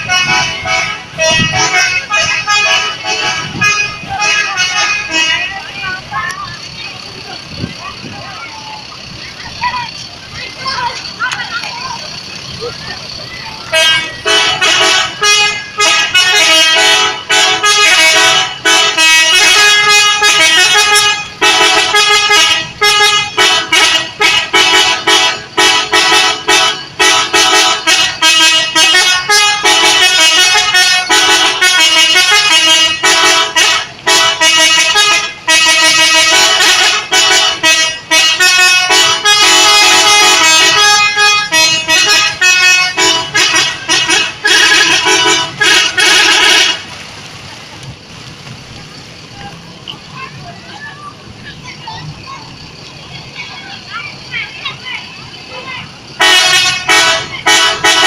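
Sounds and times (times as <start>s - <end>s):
bus air horn playing a tune: 0.0s - 6.0s, 13.6s - 46.9s, 56.1s - 58.0s.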